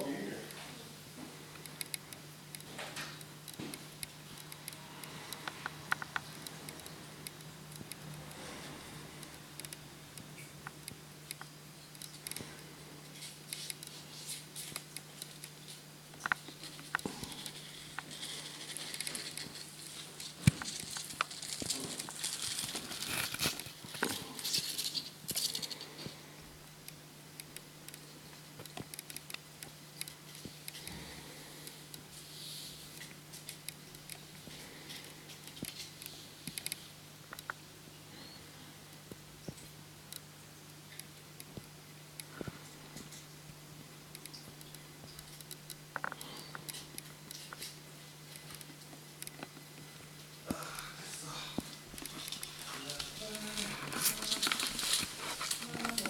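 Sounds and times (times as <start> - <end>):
steady low hum: 0.0 - 56.0
packages being handled: 16.2 - 26.2, 50.6 - 56.0.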